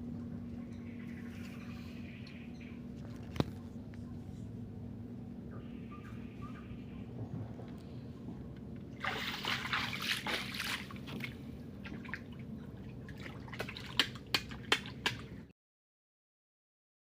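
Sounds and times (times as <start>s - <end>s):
low steady hum: 0.0s - 15.5s
water splashing and trickling: 8.9s - 15.5s.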